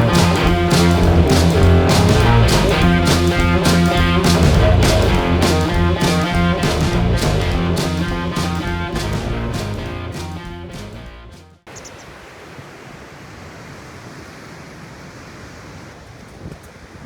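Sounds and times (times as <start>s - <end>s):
rock music with guitar and drums: 0.0s - 11.6s.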